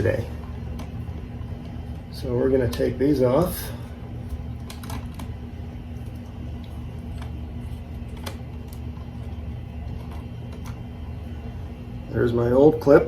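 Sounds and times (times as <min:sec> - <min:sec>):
steady low hum: 0:00.0 - 0:13.0
wire connectors clicking: 0:06.0 - 0:10.8.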